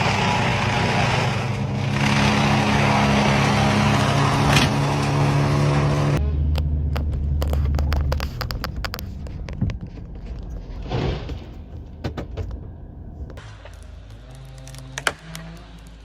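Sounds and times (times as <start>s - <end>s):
sharp cracks and snaps: 13.3s - 16.0s.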